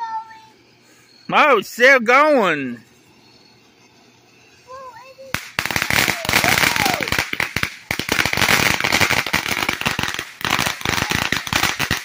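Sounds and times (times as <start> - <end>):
firework crackling pops: 5.1 - 12.0.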